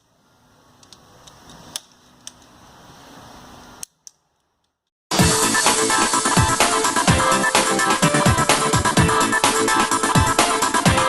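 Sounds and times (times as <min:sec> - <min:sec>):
faint workshop hiss: 0:00.0 - 0:04.6
electronic dance music: 0:05.1 - 0:11.0.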